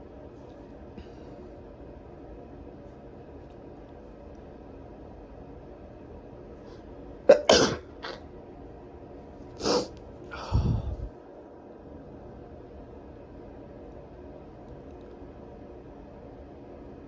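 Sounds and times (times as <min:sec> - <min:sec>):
person sneezing: 0:07.3 - 0:08.2, 0:09.6 - 0:11.0.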